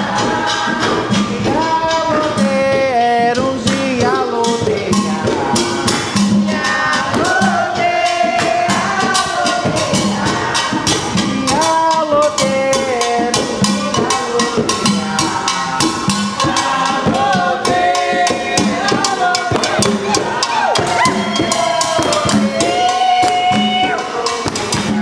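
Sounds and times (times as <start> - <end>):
group singing a chant: 0.0 - 25.0
hand drums playing: 0.0 - 25.0.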